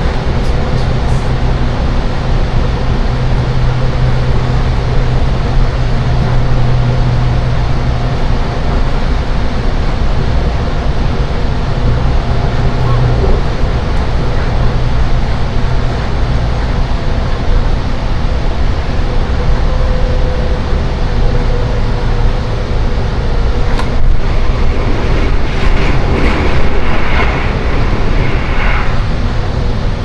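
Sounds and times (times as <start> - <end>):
train wheels rumbling on rails: 0.0 - 30.0.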